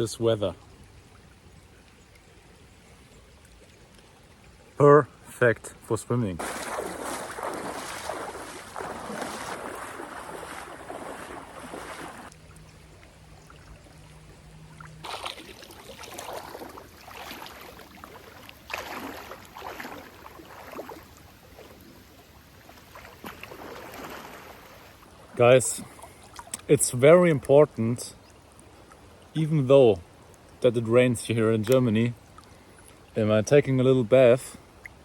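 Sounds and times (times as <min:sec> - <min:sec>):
river water rushing: 0:06.4 - 0:27.2.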